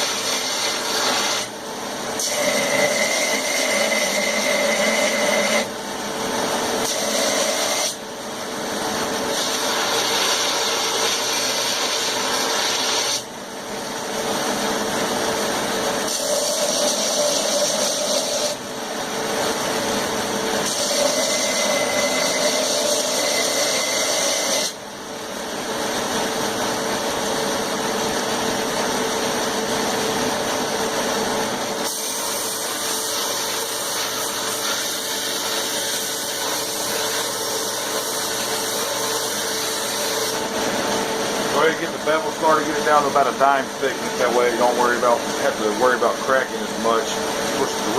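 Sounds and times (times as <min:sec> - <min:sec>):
power grinder grinding steel: 0:00.0 - 0:01.5, 0:02.2 - 0:05.7, 0:06.8 - 0:08.0, 0:09.3 - 0:13.3, 0:16.1 - 0:18.6, 0:20.6 - 0:24.8.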